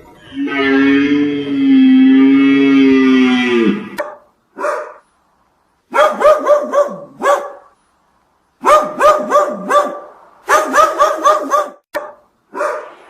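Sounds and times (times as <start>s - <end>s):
dog barking: 4.0s - 5.0s, 5.9s - 7.8s, 8.6s - 13.0s.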